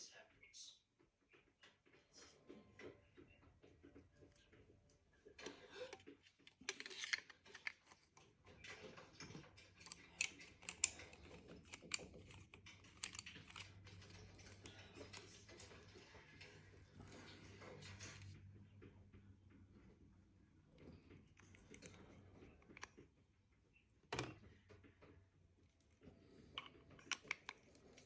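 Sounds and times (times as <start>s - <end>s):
packaging rustling and clicking: 5.8s - 16.6s.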